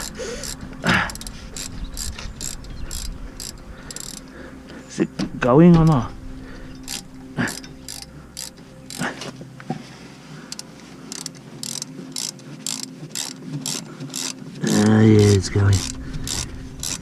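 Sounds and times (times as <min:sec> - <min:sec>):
socket ratchet clicking: 0:00.0 - 0:04.3, 0:06.8 - 0:09.0, 0:10.5 - 0:17.0.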